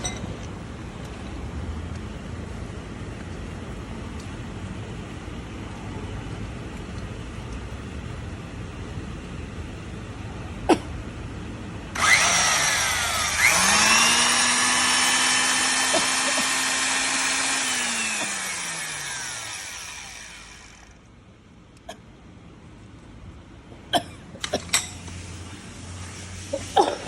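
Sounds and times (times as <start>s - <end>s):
core drill motor humming: 12.0s - 21.1s.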